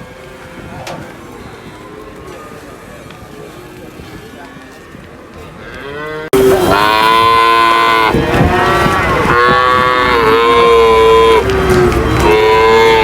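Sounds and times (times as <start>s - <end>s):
cow mooing: 5.6s - 13.0s.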